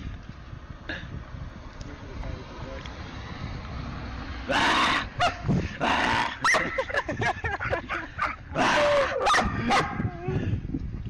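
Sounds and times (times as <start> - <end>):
animals crying out: 4.5 - 6.7, 8.2 - 10.0.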